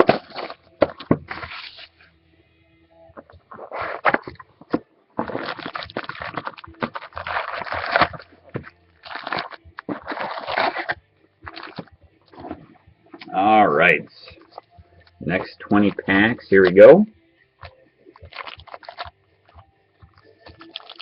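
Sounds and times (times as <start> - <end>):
packaging crinkling and rustling: 3.4 - 12.6, 18.2 - 19.2, 20.4 - 21.0.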